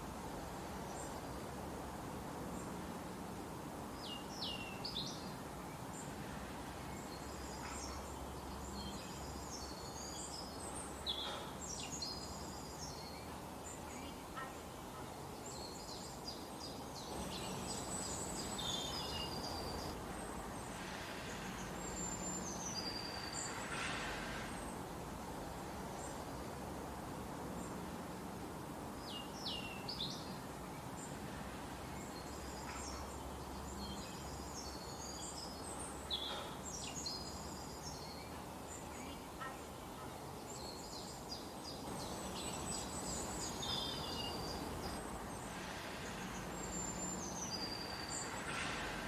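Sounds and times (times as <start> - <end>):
steady background hiss: 0.0 - 49.0
small birds chirping and singing: 6.9 - 20.0, 32.0 - 48.4.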